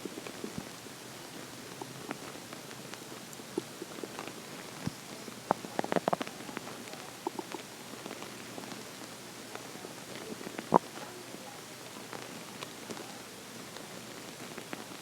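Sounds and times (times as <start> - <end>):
stomach growling: 1.7 - 11.2.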